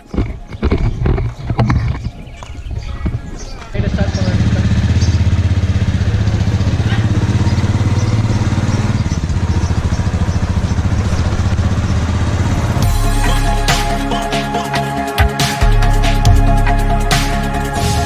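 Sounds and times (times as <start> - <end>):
music: 0.0 - 4.6, 12.6 - 18.0
motorcycle engine idling: 3.7 - 13.7.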